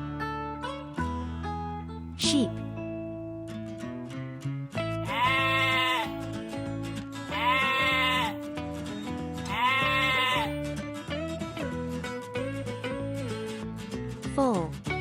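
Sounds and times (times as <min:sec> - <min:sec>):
background music: 0:00.0 - 0:04.0, 0:04.6 - 0:15.0
sheep bleating: 0:05.0 - 0:06.3, 0:07.3 - 0:08.4, 0:09.4 - 0:10.7.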